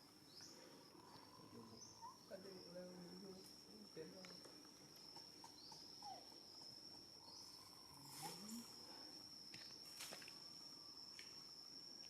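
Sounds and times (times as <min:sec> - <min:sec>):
high-pitched insect drone: 0:00.0 - 0:12.0.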